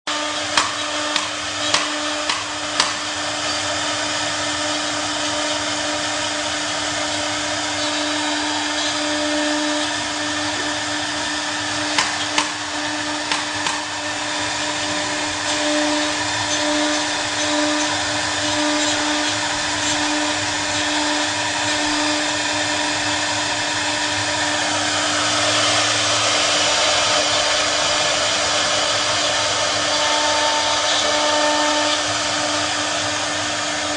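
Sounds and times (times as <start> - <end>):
cnc router spindle humming: 0.1 - 33.9.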